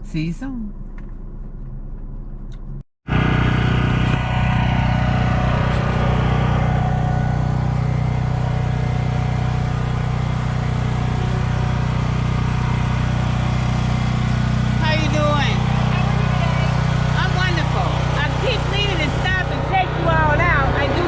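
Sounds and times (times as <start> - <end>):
car engine drone: 0.8 - 21.0
road noise: 0.8 - 21.0.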